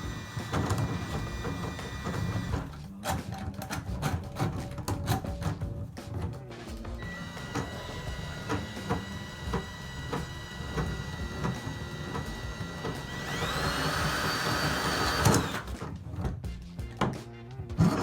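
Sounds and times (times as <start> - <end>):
drain snake motor whining: 0.0 - 2.8, 7.0 - 15.8.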